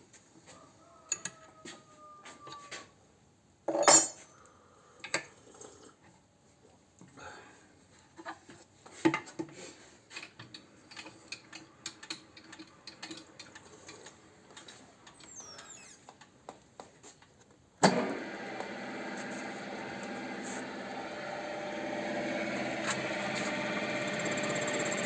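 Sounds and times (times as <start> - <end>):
machine motor humming: 17.9 - 25.0.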